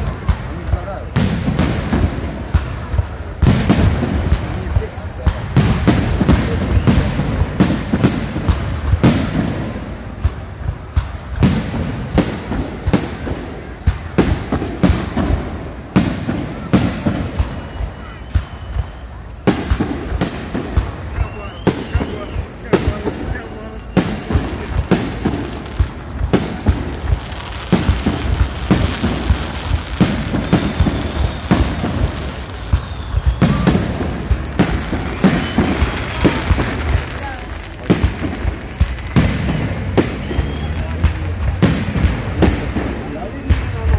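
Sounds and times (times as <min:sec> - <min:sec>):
fireworks crackling: 0:00.0 - 0:43.9
rumbling echo: 0:00.0 - 0:43.9.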